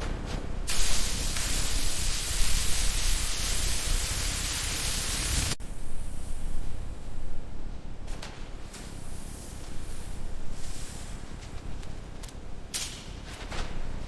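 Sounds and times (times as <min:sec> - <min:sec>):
steady hiss: 0:00.7 - 0:07.7.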